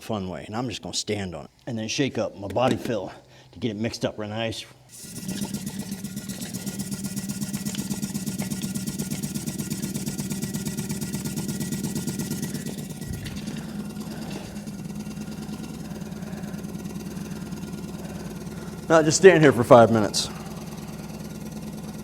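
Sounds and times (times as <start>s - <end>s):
rattle of shaking can: 4.9s - 15.5s
paint shaker motor hum: 4.9s - 22.0s.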